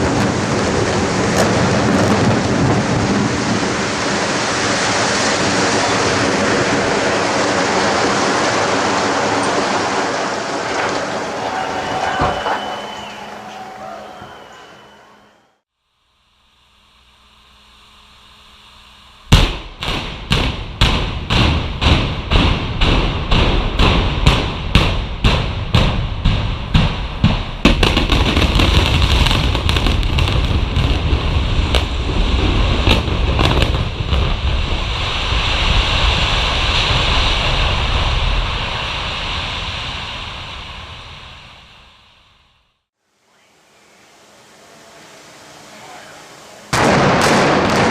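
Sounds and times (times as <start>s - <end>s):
building collapsing rumble: 0.0s - 13.6s, 19.3s - 42.1s
demolition charges banging: 0.0s - 15.2s, 19.3s - 38.9s.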